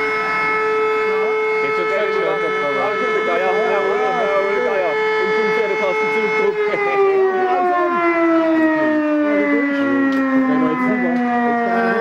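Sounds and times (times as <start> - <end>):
fire alarm siren winding down: 0.0 - 12.0.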